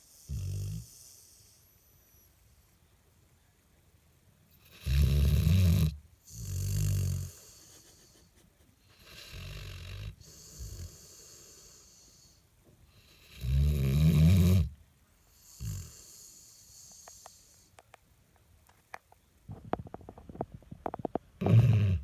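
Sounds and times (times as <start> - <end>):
dog snoring: 0.0 - 1.8, 4.6 - 8.3, 8.9 - 17.7, 21.4 - 22.0.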